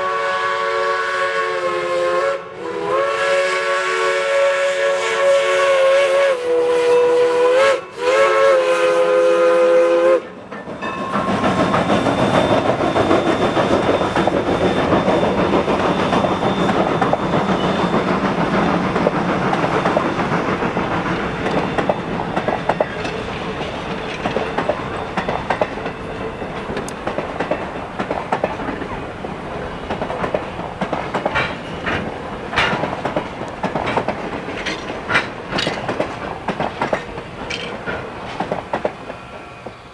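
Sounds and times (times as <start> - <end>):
steam whistle blasts: 0.0 - 10.4
train wheels clicking over rail joints: 10.2 - 39.9.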